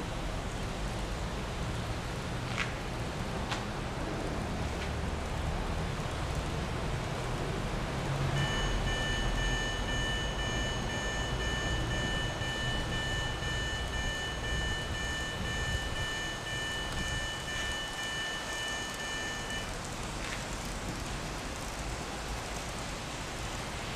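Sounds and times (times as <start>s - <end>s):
steady hiss: 0.0s - 23.9s
level crossing alarm: 8.3s - 19.9s.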